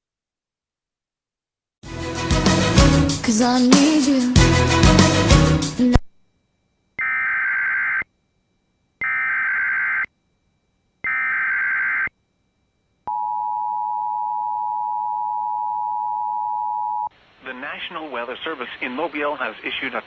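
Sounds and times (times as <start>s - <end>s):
warbling data tones: 7.0s - 8.1s, 9.0s - 10.1s, 11.0s - 12.1s.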